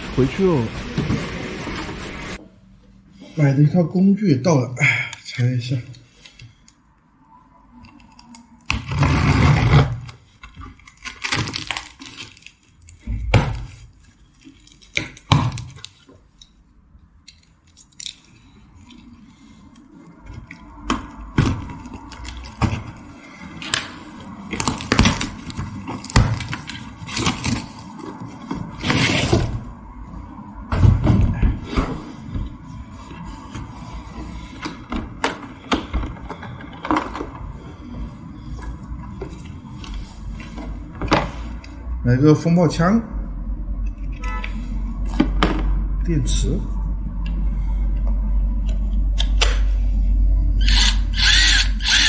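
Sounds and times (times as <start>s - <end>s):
packaging ripping: 10.8s - 13.0s.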